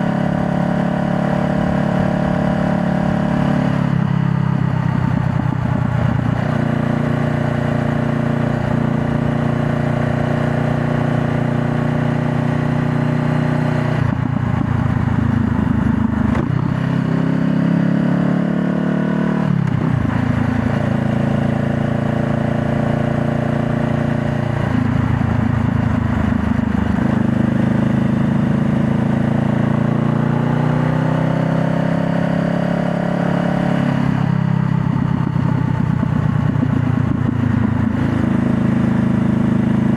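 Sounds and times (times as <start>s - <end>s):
motorcycle engine running: 0.0s - 39.9s
road noise: 0.0s - 39.9s
wind noise: 1.4s - 7.4s.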